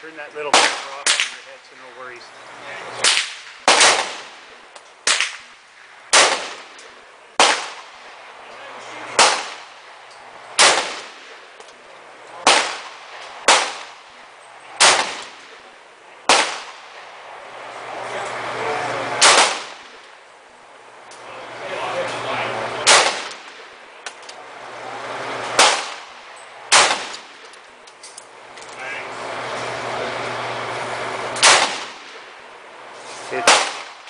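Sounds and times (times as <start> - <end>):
rifle shots cracking: 0.4 - 1.4, 3.0 - 8.1, 9.1 - 9.9, 10.5 - 11.5, 12.4 - 17.0, 19.2 - 20.1, 22.8 - 24.2, 25.5 - 27.6, 31.4 - 32.3, 33.4 - 34.0.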